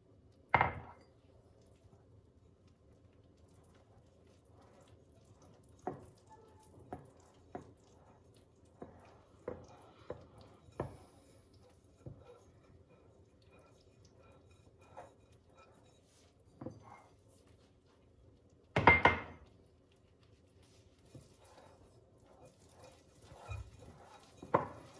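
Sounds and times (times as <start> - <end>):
dishes clattering: 18.8 - 19.4, 22.6 - 24.9
utensils tapping and knocking: 22.5 - 24.9.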